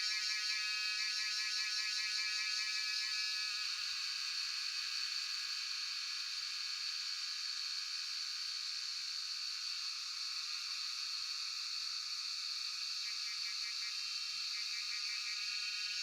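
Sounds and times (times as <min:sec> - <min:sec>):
cicadas buzzing: 0:12.5 - 0:16.0.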